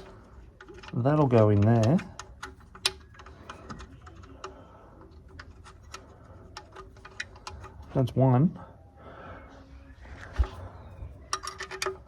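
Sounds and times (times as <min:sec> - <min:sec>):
hand tools clicking and tapping: 0:00.0 - 0:07.8.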